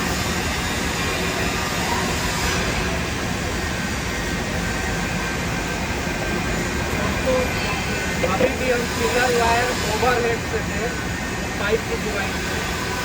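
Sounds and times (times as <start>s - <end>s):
welding torch hiss and hum: 0.0s - 13.0s
workshop running noise: 0.0s - 13.0s.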